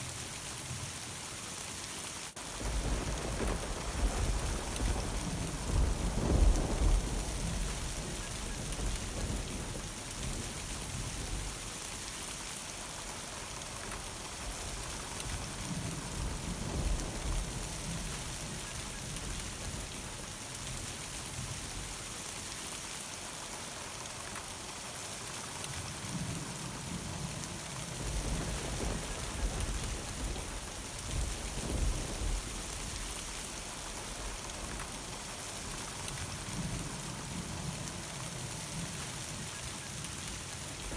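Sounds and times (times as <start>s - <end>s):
rain pattering: 0.0s - 40.9s
thunder rumbling: 2.4s - 11.6s, 13.7s - 20.0s, 27.9s - 37.8s.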